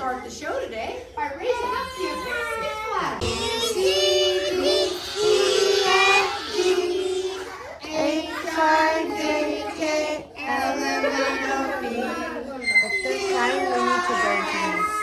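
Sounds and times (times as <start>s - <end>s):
children singing: 3.2s - 15.0s.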